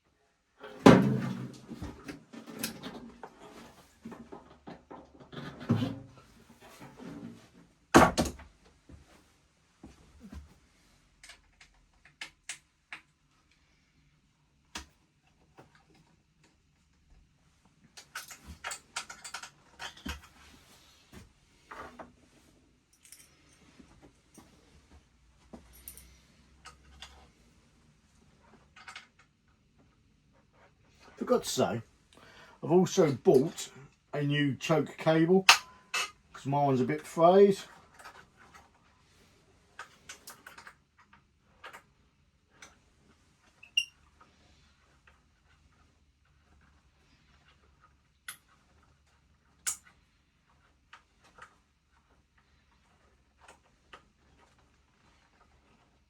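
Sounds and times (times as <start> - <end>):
metal tools clinking and rattling: 22.9 - 23.8, 25.7 - 27.2.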